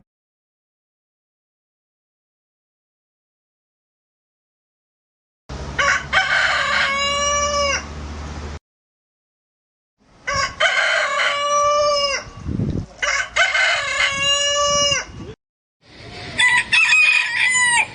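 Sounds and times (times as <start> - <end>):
rooster crowing: 5.8 - 7.9, 10.2 - 12.4, 13.0 - 15.1, 16.3 - 17.9.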